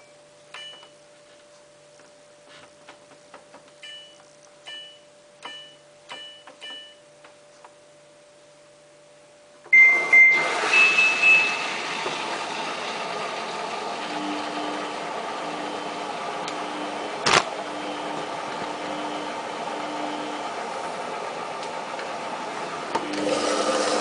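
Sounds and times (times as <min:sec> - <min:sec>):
washing machine beeps: 0:00.0 - 0:01.0, 0:03.8 - 0:07.1, 0:09.7 - 0:12.0
water rushing into washing machine: 0:09.8 - 0:17.3, 0:22.8 - 0:24.0.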